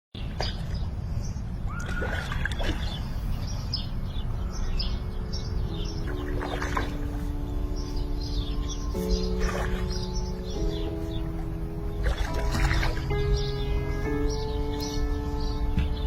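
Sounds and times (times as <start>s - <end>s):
birds chirping: 0.2s - 16.0s
steady low rumble: 2.4s - 16.0s
held musical notes: 4.4s - 16.0s.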